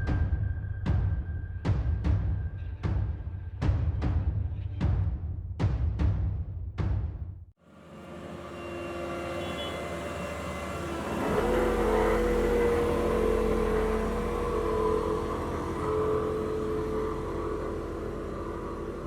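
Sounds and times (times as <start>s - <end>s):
diesel engine revving: 8.7s - 19.0s.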